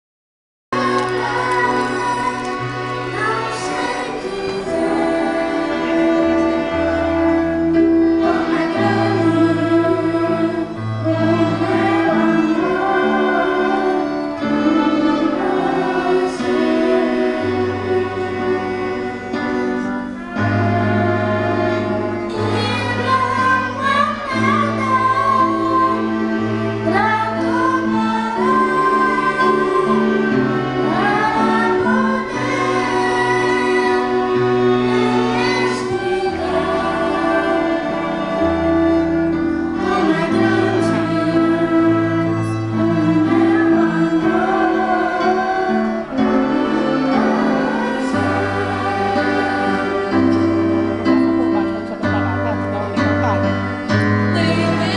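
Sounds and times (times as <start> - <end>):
music with female singing: 53.8 - 54.9.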